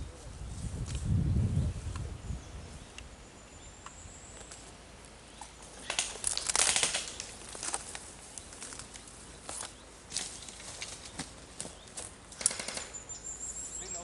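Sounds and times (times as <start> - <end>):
rustling and crackling brush: 4.4 - 12.4.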